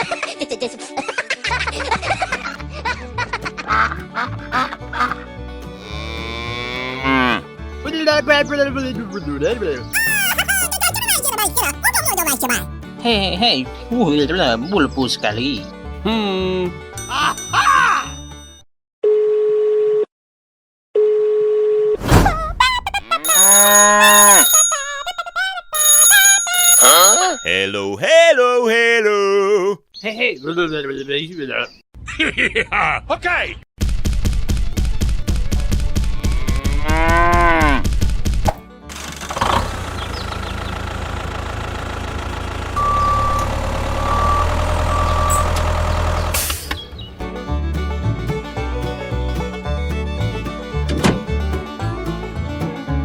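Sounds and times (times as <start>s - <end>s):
cow-like moo: 5.8s - 7.5s, 36.2s - 37.9s
cartoonish pitch-bending sounds: 10.0s - 12.7s, 22.2s - 27.7s
long steady beeps: 23.3s - 27.5s, 42.8s - 45.6s
small engine running: 38.9s - 46.5s
short beeps: 42.8s - 45.7s.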